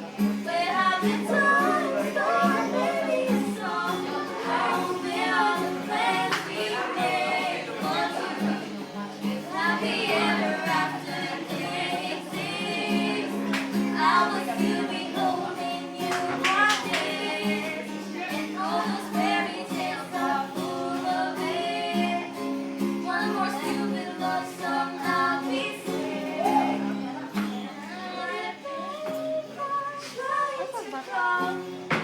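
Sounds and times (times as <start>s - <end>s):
person singing: 0.5s - 8.5s.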